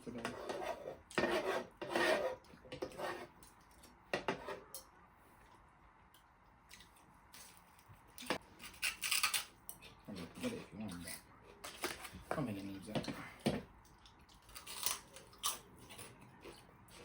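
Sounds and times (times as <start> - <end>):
chewing and mouth noises: 6.6 - 7.9.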